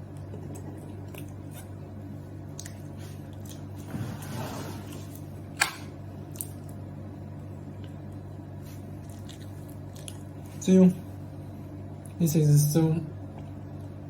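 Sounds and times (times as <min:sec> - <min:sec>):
wet squishing of eating: 0:00.0 - 0:11.2
steady low hum: 0:00.0 - 0:14.0.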